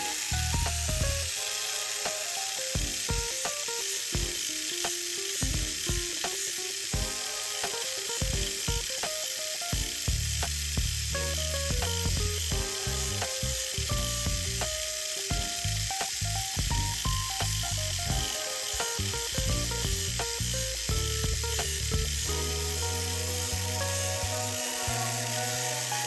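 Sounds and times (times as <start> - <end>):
background music with bass line: 0.0 - 1.6, 9.7 - 26.0
steady hiss: 0.0 - 26.0.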